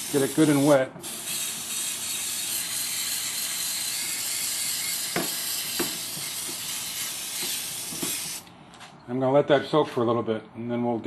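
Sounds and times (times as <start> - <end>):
aerosol can spraying: 0.0 - 8.4.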